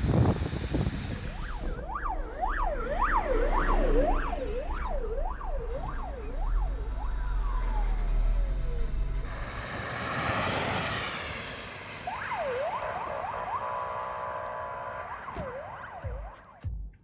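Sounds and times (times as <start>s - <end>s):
road noise: 0.0s - 16.5s
electronic siren whooping: 0.1s - 16.7s
steady horn tone: 0.7s - 9.6s.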